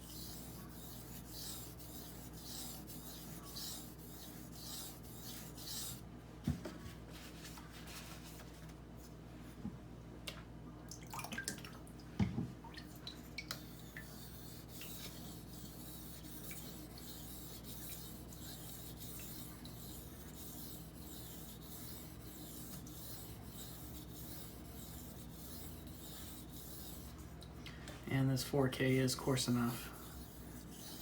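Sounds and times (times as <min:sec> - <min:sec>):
knife scraping on whetstone: 0:00.0 - 0:06.0, 0:13.5 - 0:27.4, 0:29.3 - 0:31.0.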